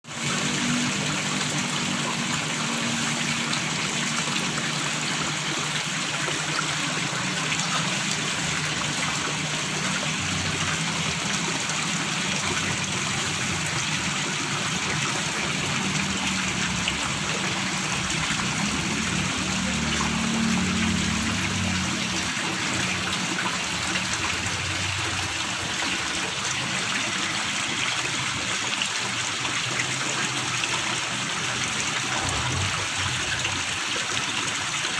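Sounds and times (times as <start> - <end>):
stream gurgling over stones: 0.0 - 34.9.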